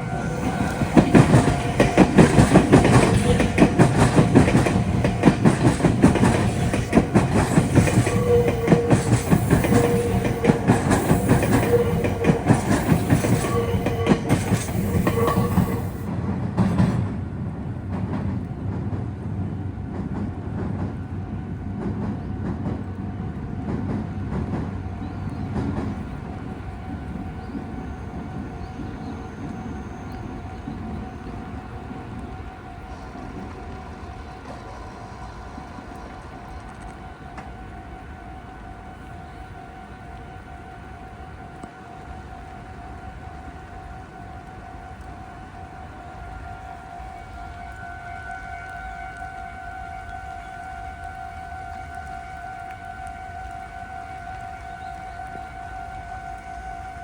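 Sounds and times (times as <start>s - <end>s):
train wheels clattering over rail joints: 0.4s - 17.2s.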